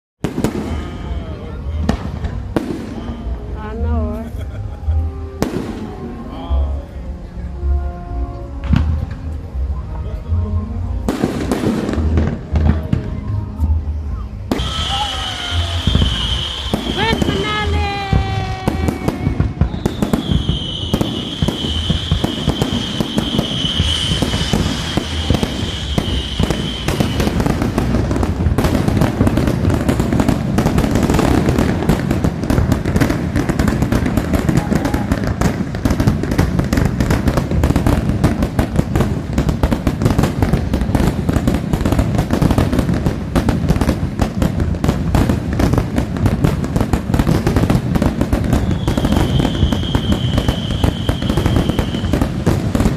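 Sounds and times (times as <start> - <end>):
fireworks bangs and crackling: 0.2 - 6.9, 8.6 - 10.2, 11.0 - 52.9
high firework whistle: 14.0 - 38.0, 48.2 - 52.9.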